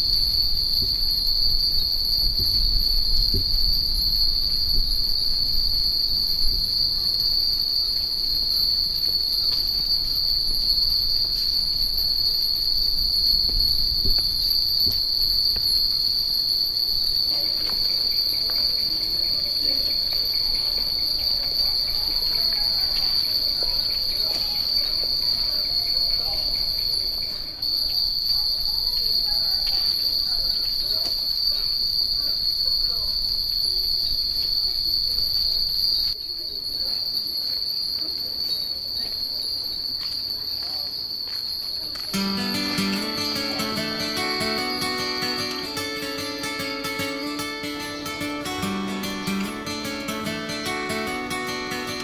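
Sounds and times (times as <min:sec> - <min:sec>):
wind chimes tinkling: 0:00.0 - 0:30.7, 0:42.1 - 0:52.0
cicadas droning: 0:00.0 - 0:52.0.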